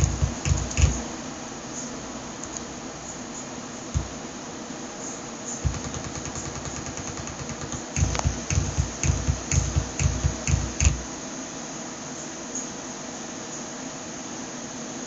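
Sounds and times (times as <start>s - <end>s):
low pops and clicks: 0.0s - 1.0s, 5.6s - 11.0s
speaker stuttering buzz: 0.0s - 1.0s, 5.6s - 11.0s
steady hiss: 0.0s - 15.0s.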